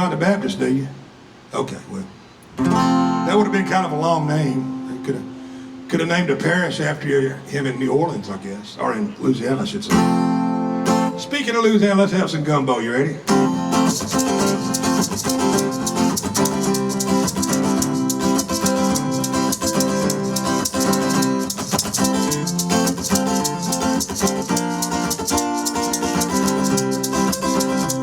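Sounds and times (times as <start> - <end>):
strummed guitar: 2.5 - 6.4, 9.9 - 11.4, 13.3 - 28.0
shaker rhythm: 13.3 - 28.0.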